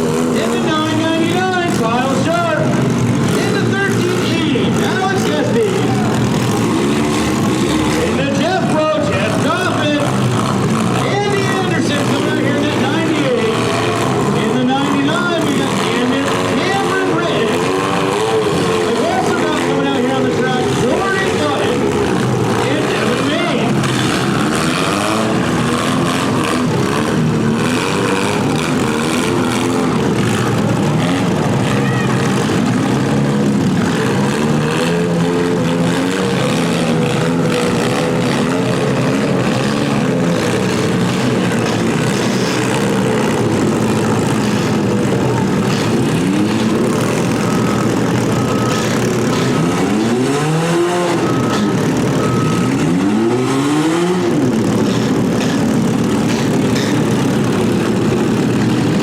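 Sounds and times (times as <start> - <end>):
car engines revving: 0.0 - 59.0.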